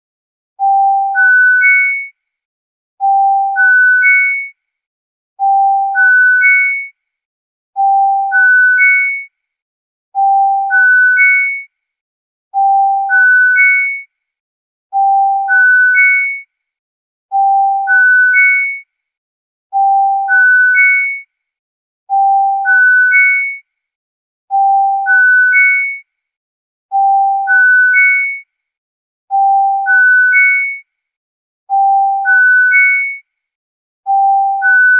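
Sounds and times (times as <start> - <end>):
rising electronic alarm beeps: 34.1 - 34.9.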